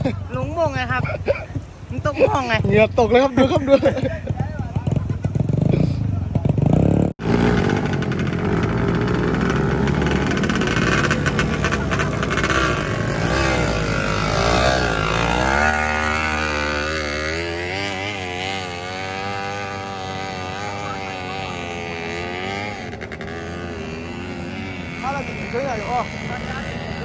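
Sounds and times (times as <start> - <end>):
motorcycle engine revving: 4.2 - 27.0.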